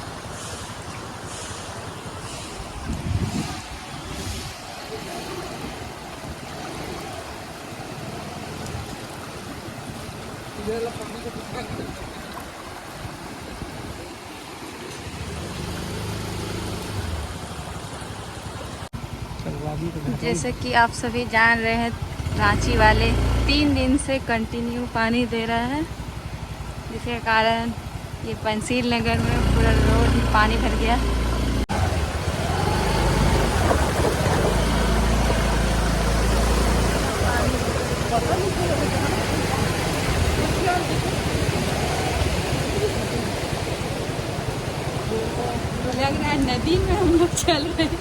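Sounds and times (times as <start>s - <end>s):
heavy rain hissing: 0.0s - 8.7s
vehicle engine humming: 0.0s - 48.0s.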